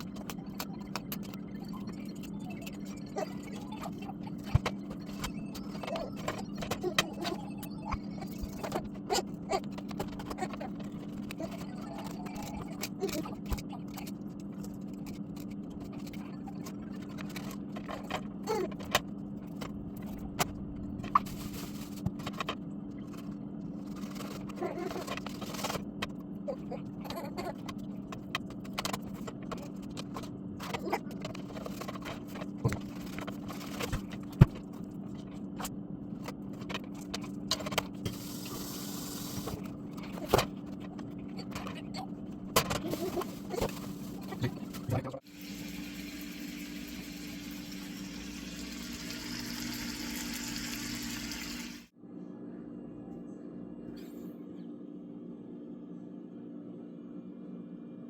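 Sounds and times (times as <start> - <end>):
objects scraping and rattling: 27.6 - 45.2
steady low hum: 51.9 - 58.0.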